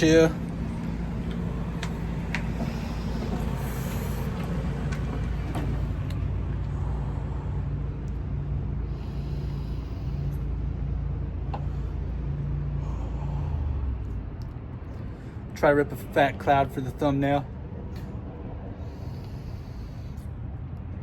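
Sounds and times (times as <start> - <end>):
low engine hum: 0.0 - 21.0.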